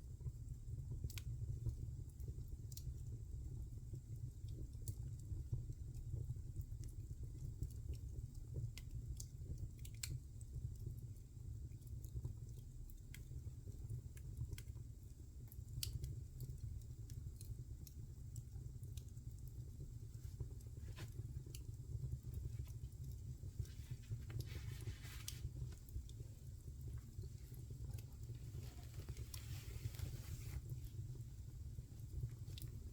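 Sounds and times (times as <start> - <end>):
low rumble of flames: 0.0 - 32.9
wood fire crackling and popping: 0.0 - 32.9.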